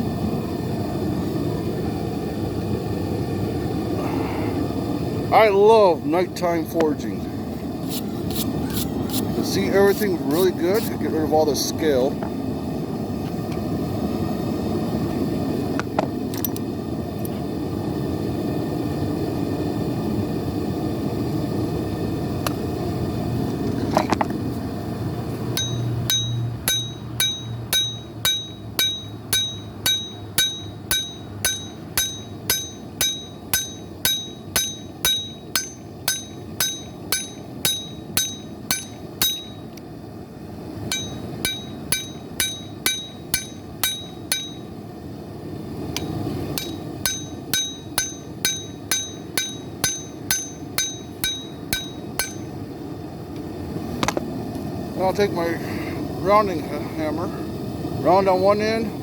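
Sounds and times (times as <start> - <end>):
hammer ringing on anvil: 25.6 - 39.7, 40.9 - 44.7, 46.0 - 52.5.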